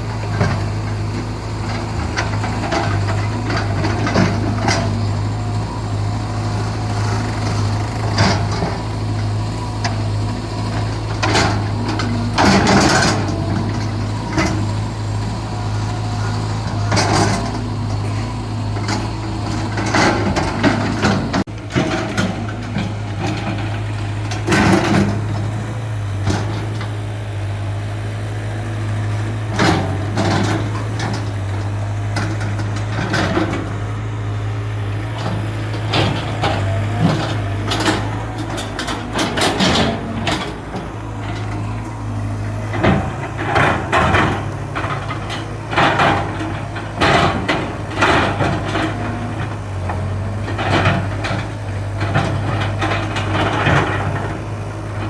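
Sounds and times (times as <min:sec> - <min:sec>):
excavator diesel engine running: 0:00.0 - 0:55.0
machine clanks and knocks: 0:35.1 - 0:54.4.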